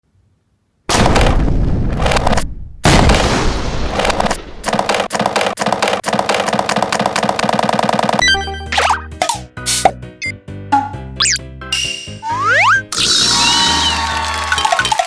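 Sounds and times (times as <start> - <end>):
explosion-like booms: 0.9 - 4.6.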